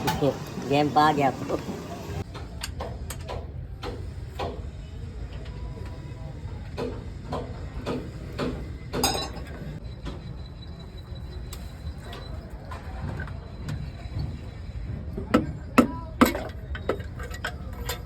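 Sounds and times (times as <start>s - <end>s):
metal clinks and taps: 9.0s - 9.6s.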